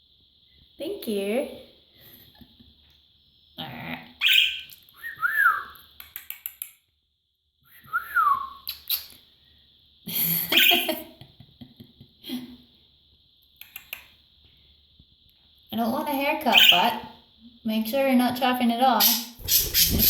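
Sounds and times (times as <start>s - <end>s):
budgerigar chirping and chattering: 4.2s - 4.8s, 10.5s - 10.9s, 16.4s - 17.0s, 19.0s - 20.0s
budgerigar whistled notes: 4.2s - 5.7s.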